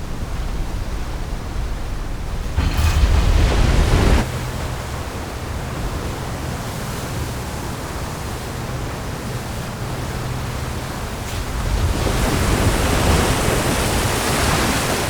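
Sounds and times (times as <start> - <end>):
churning water rushing: 0.0 - 15.0
wind: 0.0 - 15.0
wave surge: 2.4 - 4.3.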